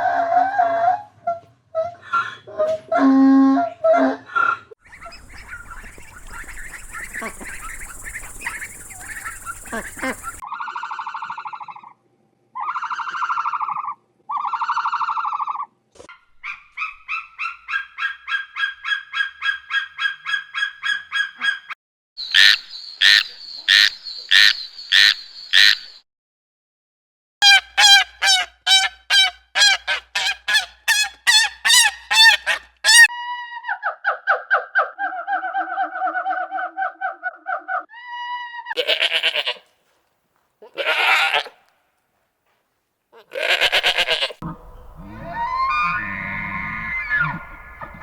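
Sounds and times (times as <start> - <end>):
waterfowl honking: 4.9 - 10.4, 27.4 - 33.1, 43.4 - 48.0.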